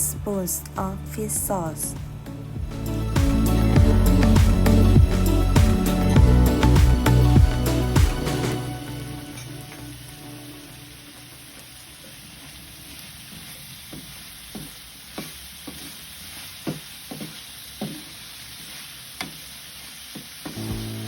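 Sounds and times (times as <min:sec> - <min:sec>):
meat sizzling in a pan: 0:09.0 - 0:21.0.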